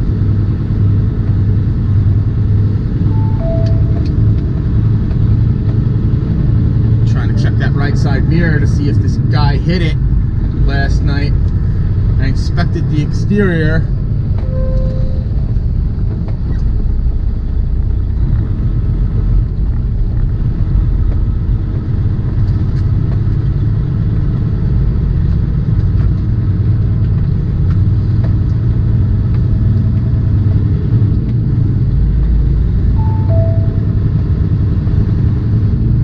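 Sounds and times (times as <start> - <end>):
truck diesel engine running: 1.2 - 25.7.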